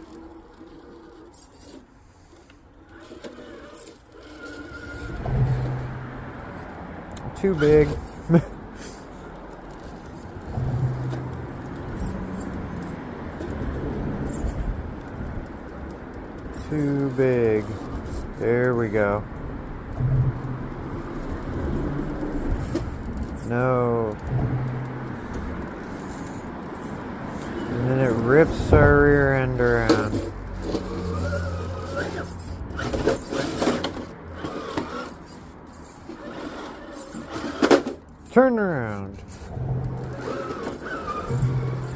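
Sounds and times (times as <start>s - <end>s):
toy car motor whining: 0.0s - 6.7s, 7.4s - 15.6s, 16.2s - 19.2s, 24.7s - 28.9s, 29.6s - 41.9s
tires knocking on rock: 4.5s - 23.5s, 24.1s - 35.1s, 39.3s - 41.9s.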